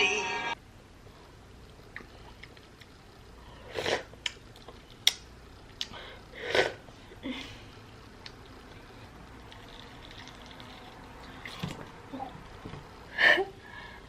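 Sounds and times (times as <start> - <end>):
wet chewing with mouth clicks: 8.2 - 12.4.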